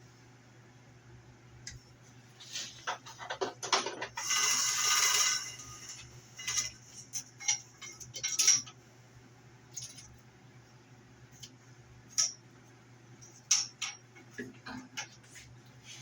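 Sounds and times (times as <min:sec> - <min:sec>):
low machine hum: 0:00.0 - 0:16.0
metal parts clinking and knocking: 0:03.0 - 0:08.8, 0:12.1 - 0:12.4.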